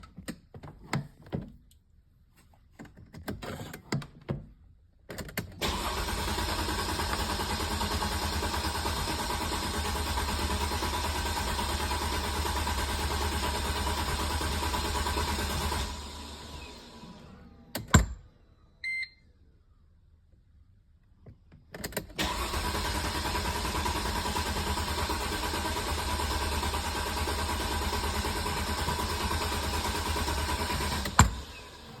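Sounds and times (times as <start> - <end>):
car engine cranking: 5.4 - 16.3, 21.8 - 31.8.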